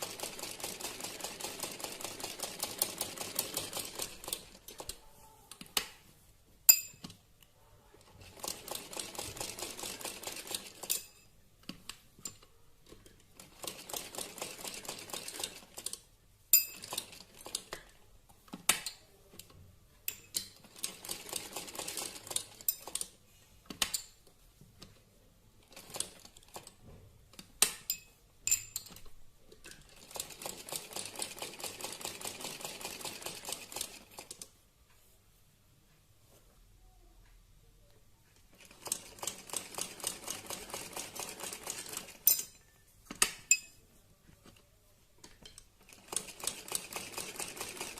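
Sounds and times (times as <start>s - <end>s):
sewing machine stitching: 38.6s - 42.3s, 45.8s - 47.9s.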